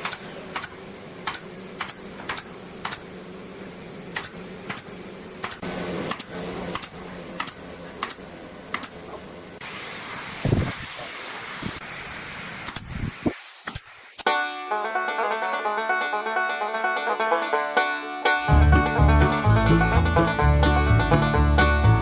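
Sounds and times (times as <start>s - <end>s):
steady low hum: 0.0s - 9.8s.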